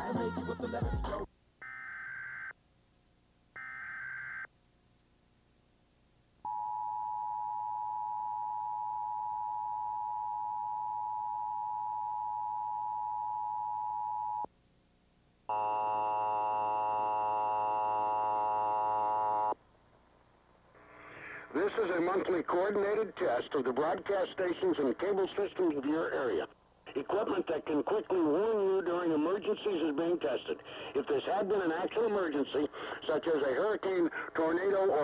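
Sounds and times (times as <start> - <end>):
buzzy tone with overtones: 15.5 - 19.6.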